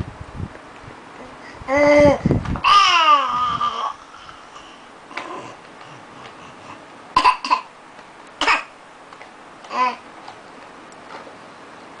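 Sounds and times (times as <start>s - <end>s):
person fake coughing: 7.2s - 7.7s.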